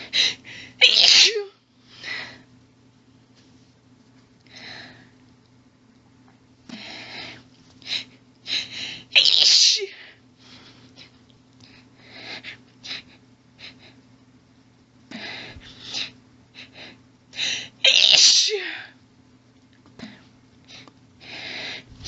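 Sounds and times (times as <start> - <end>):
woman sneezing: 0.8 - 1.6, 9.2 - 10.0, 17.8 - 18.9.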